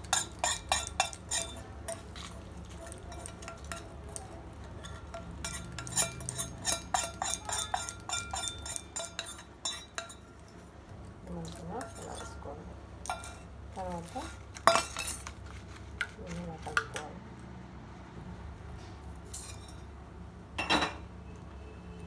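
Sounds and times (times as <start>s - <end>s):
metal spoon clinking on cookware: 0.0s - 10.6s, 11.4s - 12.4s, 13.0s - 17.1s, 19.3s - 19.9s.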